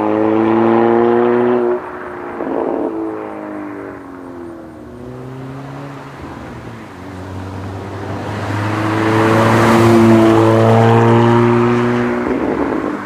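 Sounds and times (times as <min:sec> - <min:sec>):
car exhaust driving past: 0:00.0 - 0:13.0.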